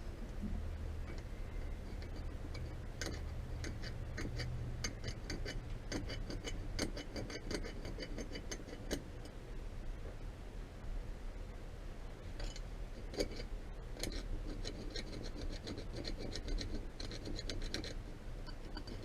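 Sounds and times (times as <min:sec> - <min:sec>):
low hum: 0:00.0 - 0:06.9.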